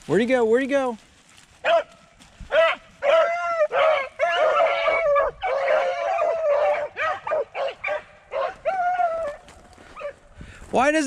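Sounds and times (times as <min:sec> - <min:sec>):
beagles baying and yelping: 0:01.6 - 0:10.3.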